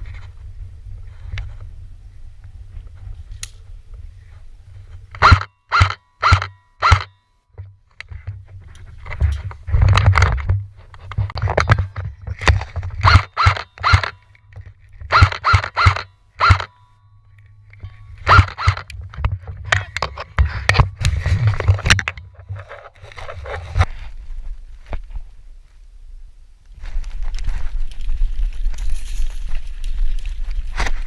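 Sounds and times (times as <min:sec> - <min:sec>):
low wind rumble: 0:00.0 - 0:05.2, 0:07.8 - 0:31.0
gear rustling: 0:26.9 - 0:31.0.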